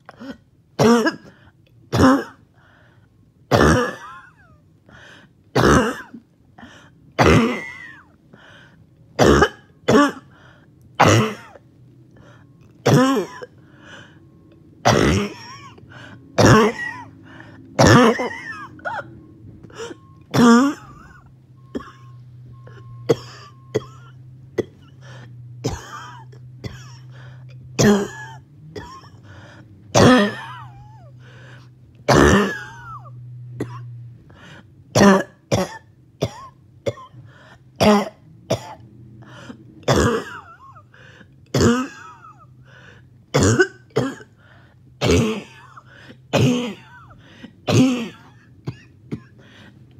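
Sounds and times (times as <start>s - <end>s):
person coughing harshly: 0.0s - 2.5s, 3.5s - 4.4s, 5.5s - 8.1s, 9.2s - 10.4s, 11.0s - 11.6s, 12.8s - 13.6s, 14.8s - 19.1s, 19.7s - 22.1s, 22.7s - 33.8s, 35.0s - 38.8s, 39.8s - 42.5s, 43.3s - 44.4s, 45.0s - 49.7s.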